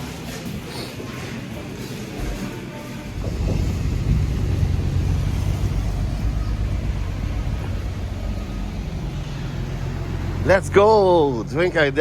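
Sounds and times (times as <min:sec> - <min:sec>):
traffic engine rumble: 0:00.0 - 0:12.0.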